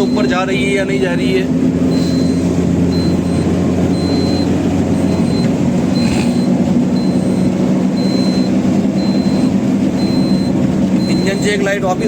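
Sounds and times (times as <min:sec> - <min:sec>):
road noise: 0:00.0 - 0:12.0
truck engine at speed: 0:00.0 - 0:12.0.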